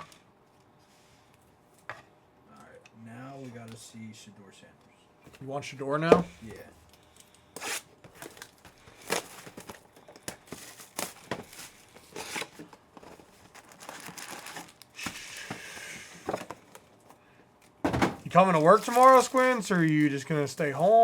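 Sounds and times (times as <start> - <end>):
wrapper crinkling and tearing: 7.6 - 15.3, 18.2 - 21.0.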